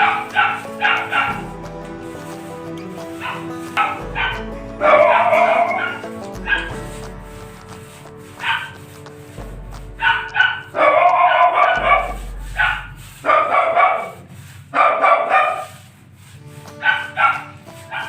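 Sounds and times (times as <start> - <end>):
background music: 0.0 - 13.9, 16.4 - 18.0
dog barking: 10.4 - 15.8.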